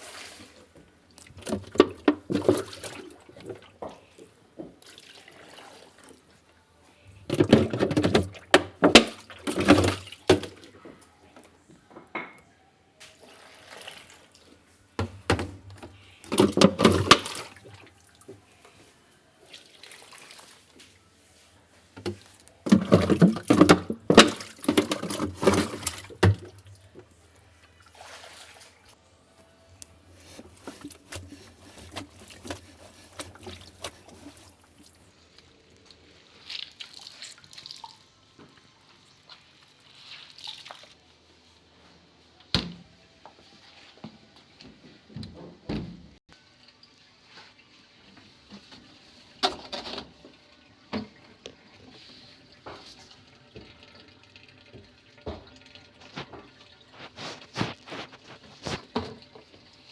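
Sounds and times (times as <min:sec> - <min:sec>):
water sloshing and splashing: 0:00.0 - 0:06.3, 0:07.2 - 0:10.8, 0:13.0 - 0:18.6, 0:19.5 - 0:20.9, 0:22.0 - 0:29.0, 0:29.9 - 0:35.1, 0:36.1 - 0:38.0, 0:39.2 - 0:41.0, 0:49.4 - 0:59.9.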